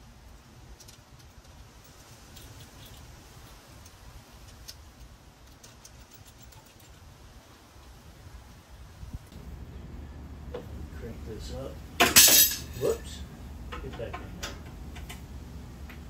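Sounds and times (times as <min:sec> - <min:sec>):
low steady hum: 0:00.0 - 0:16.0
light clicks of small parts: 0:00.7 - 0:07.1.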